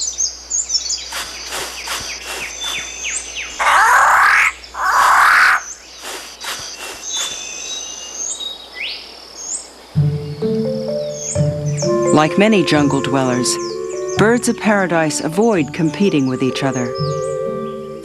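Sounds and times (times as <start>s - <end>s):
insects chorus: 0.0s - 12.1s
birds chirping and whistling: 0.0s - 18.0s
bird harsh rasping calls: 0.7s - 8.4s.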